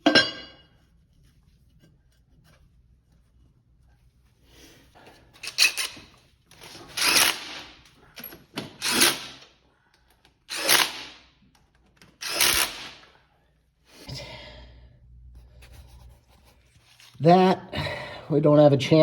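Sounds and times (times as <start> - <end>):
power driver driving bolts: 6.6 - 9.4.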